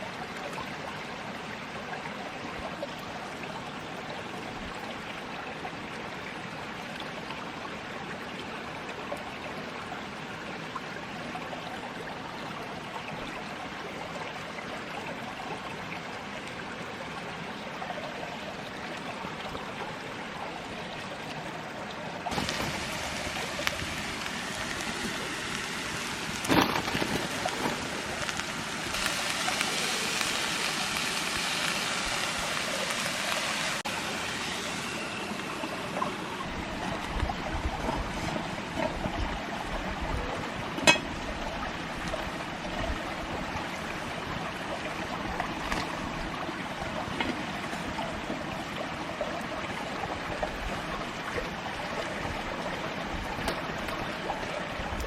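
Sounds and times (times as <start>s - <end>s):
running water rushing: 0.0s - 55.0s
loud hissing: 22.3s - 36.0s.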